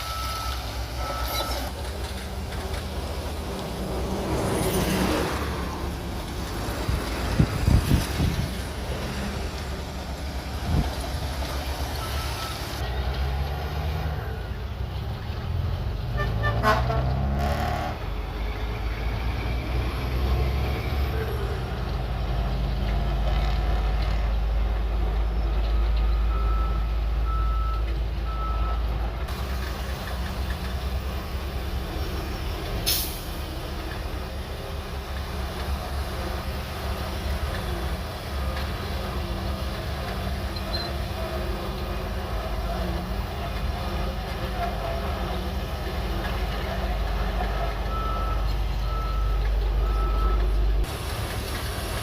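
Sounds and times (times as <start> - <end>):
short beeps: 0.0 - 1.7, 40.6 - 40.9
bulldozer diesel engine running: 0.0 - 16.8, 17.6 - 52.0.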